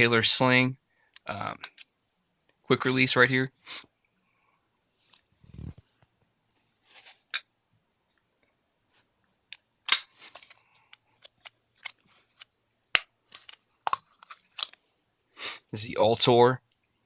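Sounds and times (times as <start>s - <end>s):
rifle parts clicking and snapping: 1.2s - 1.9s, 9.5s - 10.6s, 11.2s - 14.8s.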